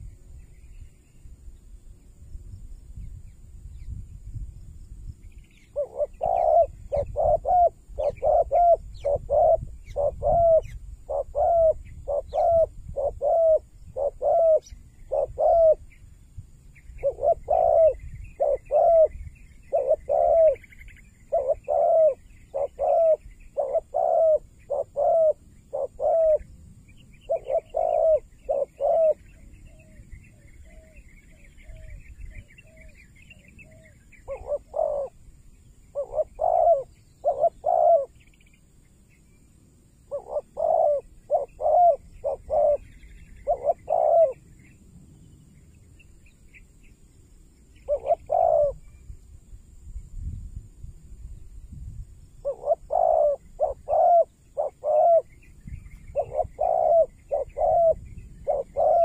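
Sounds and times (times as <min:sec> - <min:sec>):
small birds twittering: 0:05.0 - 0:50.4, 0:51.3 - 0:59.0
dove cooing: 0:05.6 - 0:15.8, 0:17.0 - 0:26.5, 0:27.3 - 0:35.2, 0:35.9 - 0:38.2, 0:40.1 - 0:44.4, 0:47.8 - 0:48.8, 0:52.4 - 0:59.0.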